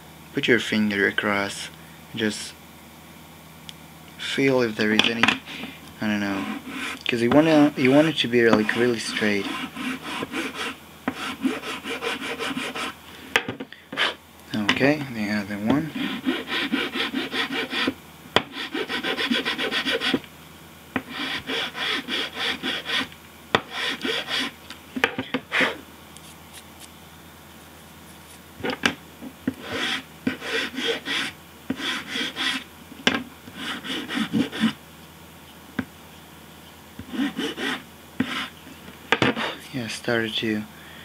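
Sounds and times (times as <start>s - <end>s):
file rasping on metal blade: 6.2s - 13.0s, 14.0s - 14.2s, 15.9s - 20.2s, 21.0s - 24.6s, 25.5s - 25.8s, 29.6s - 32.6s, 33.5s - 34.8s, 37.1s - 38.5s.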